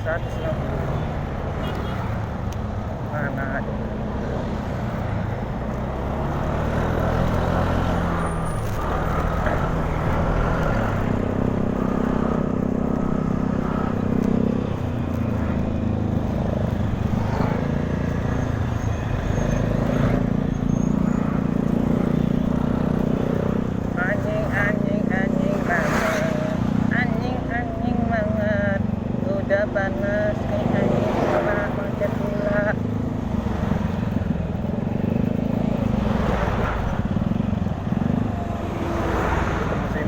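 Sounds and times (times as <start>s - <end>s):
scooter and traffic engines: 0.0s - 40.0s.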